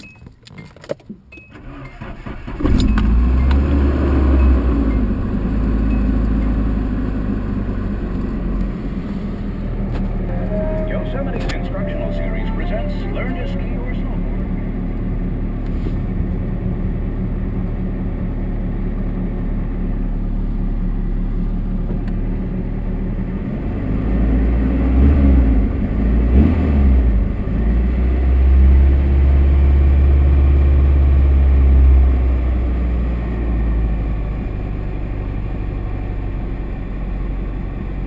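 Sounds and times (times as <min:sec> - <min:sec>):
car engine idling: 0:02.1 - 0:24.7.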